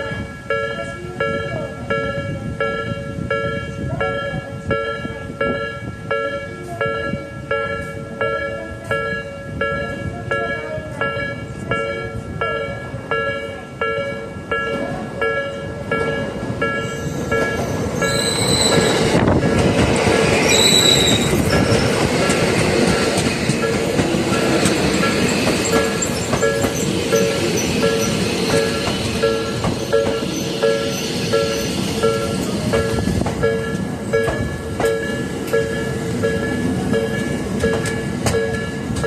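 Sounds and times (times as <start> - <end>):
electric train passing: 0.0 - 39.0
short high squeals: 16.9 - 19.1, 20.5 - 21.8.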